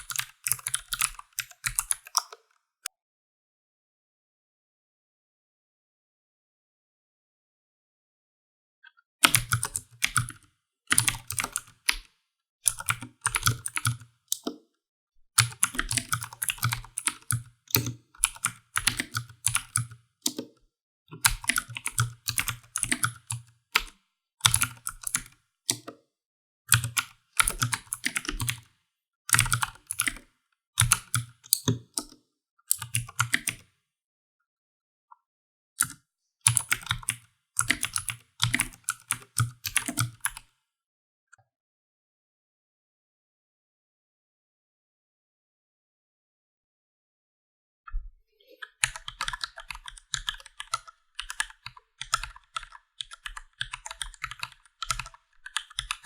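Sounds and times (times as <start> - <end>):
typing on a computer keyboard: 0.0 - 2.4, 9.2 - 12.1, 12.7 - 14.6, 15.4 - 20.5, 21.2 - 26.0, 26.7 - 28.7, 29.3 - 30.2, 30.8 - 33.7, 36.5 - 40.4, 48.6 - 56.0.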